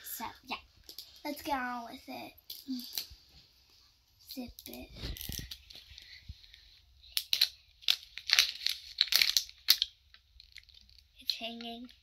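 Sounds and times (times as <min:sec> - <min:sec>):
wrapping crinkling and tearing: 0:07.1 - 0:11.6.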